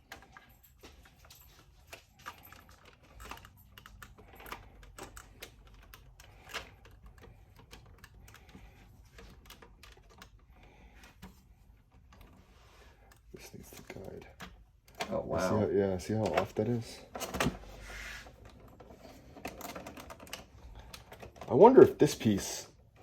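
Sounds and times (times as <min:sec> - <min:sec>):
plastic parts clicking: 0:01.8 - 0:12.4, 0:18.4 - 0:21.6.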